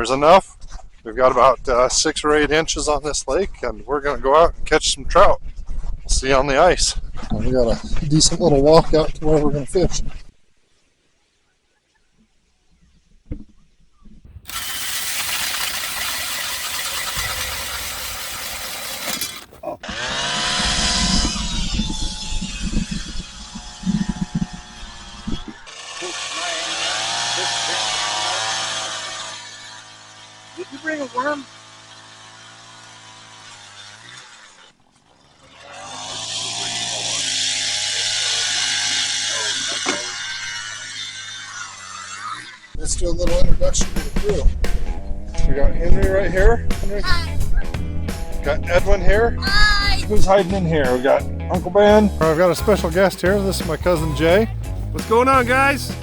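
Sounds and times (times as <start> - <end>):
auger motor whining: 14.3 - 25.8
ice auger grinding: 14.3 - 42.7, 52.2 - 56.0
small motor humming and hissing: 14.4 - 42.7.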